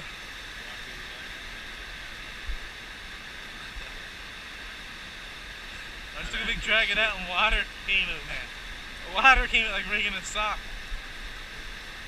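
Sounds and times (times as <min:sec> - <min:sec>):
waterfall rushing: 0:05.6 - 0:12.0.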